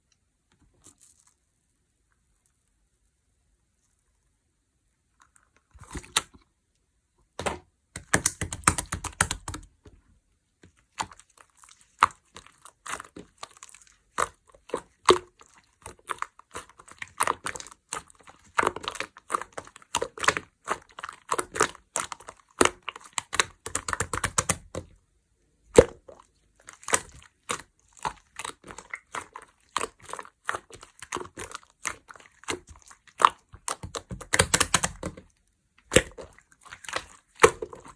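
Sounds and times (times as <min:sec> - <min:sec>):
hands squishing slime: 0:05.3 - 0:06.4, 0:07.4 - 0:09.9, 0:10.6 - 0:25.0, 0:25.7 - 0:37.9.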